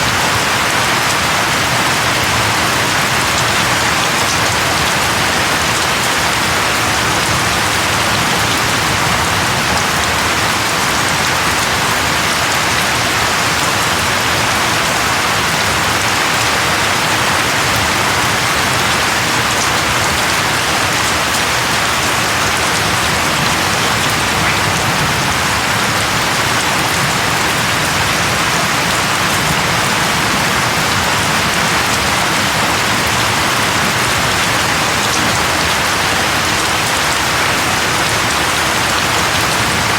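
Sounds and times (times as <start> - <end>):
rain pattering: 0.0 - 39.9.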